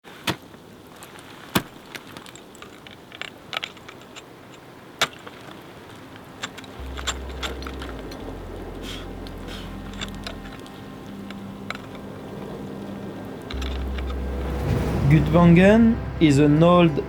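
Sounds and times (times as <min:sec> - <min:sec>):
low steady drone: 0:06.6 - 0:17.0.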